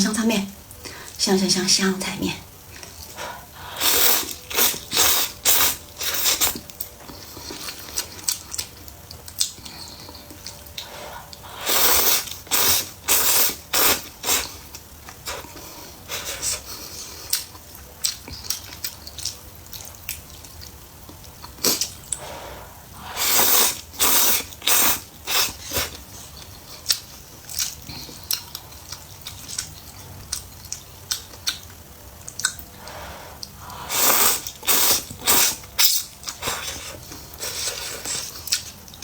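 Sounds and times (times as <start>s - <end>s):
loud noodle slurping: 3.6s - 6.6s, 11.5s - 14.6s, 21.6s - 25.9s, 33.7s - 38.3s
wet chewing and smacking: 3.9s - 11.4s, 17.2s - 22.2s, 23.8s - 32.7s, 33.4s - 39.0s.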